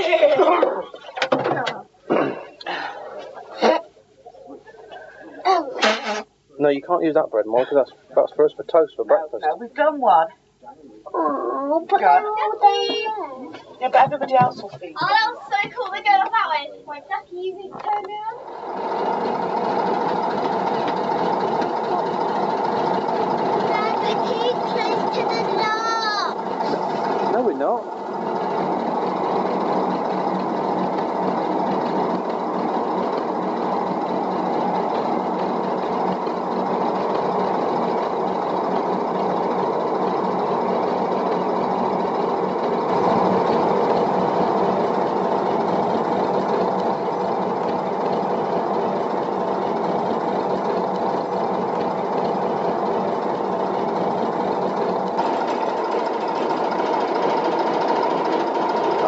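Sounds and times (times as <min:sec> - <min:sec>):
diesel engine chugging: 0:00.0 - 0:59.0.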